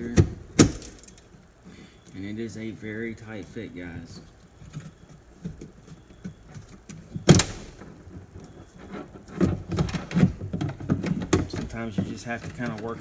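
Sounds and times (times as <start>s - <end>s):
knocks and rattles: 4.6s - 13.0s.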